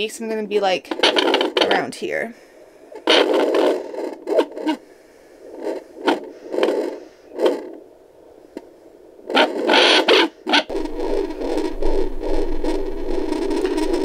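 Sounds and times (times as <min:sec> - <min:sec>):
doppler probe scraping crackle: 0:00.8 - 0:02.1, 0:02.9 - 0:07.9, 0:08.5 - 0:14.0
rhythmic whooshing heartbeat: 0:09.3 - 0:14.0.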